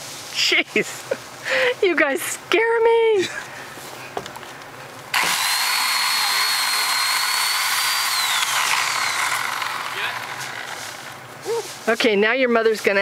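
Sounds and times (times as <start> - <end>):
chainsaw running at high revs: 5.1 - 11.3.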